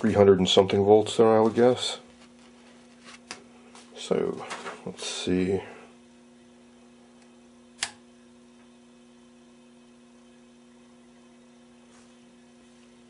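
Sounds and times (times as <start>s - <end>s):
electrical mains hum: 0.0s - 13.0s
sharp click: 7.8s - 8.0s.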